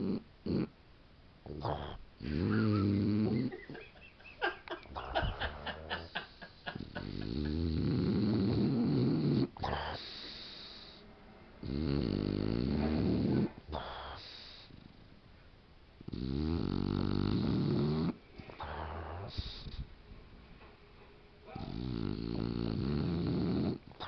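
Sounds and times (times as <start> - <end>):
dog snoring: 0.0 - 0.7, 1.4 - 3.6, 5.0 - 11.0, 11.6 - 15.1, 16.0 - 19.9, 21.5 - 24.0
dog snuffles: 7.0 - 11.0, 11.6 - 15.0, 16.1 - 19.9.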